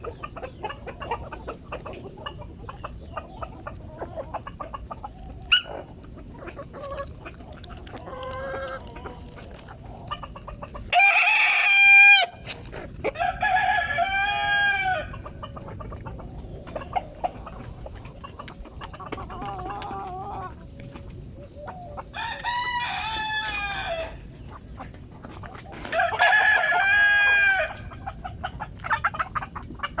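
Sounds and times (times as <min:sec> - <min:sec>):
hens clucking softly: 0:00.0 - 0:30.0
rooster crowing: 0:10.9 - 0:12.4, 0:13.2 - 0:15.2, 0:22.1 - 0:24.2, 0:25.9 - 0:27.9.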